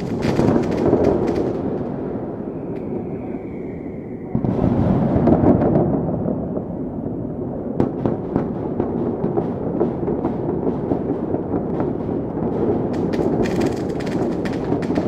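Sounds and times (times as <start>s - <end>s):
crackle of small sharp pops: 0.0s - 1.9s, 12.9s - 15.0s
rumble of fireworks explosions: 0.0s - 15.0s.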